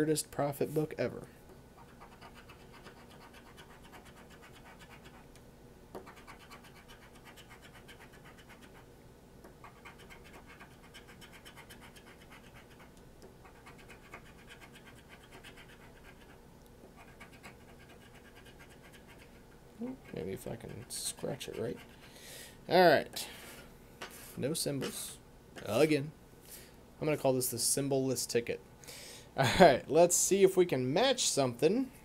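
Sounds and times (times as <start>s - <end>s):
scratch-off ticket being scratched: 1.8s - 5.2s, 6.0s - 8.8s, 9.6s - 16.4s, 17.0s - 22.1s.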